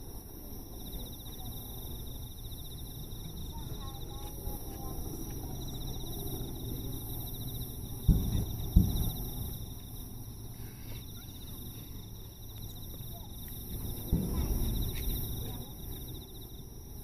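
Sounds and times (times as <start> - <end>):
insects trilling: 0.0 - 17.0
fireworks booming: 8.0 - 9.8, 14.0 - 15.7.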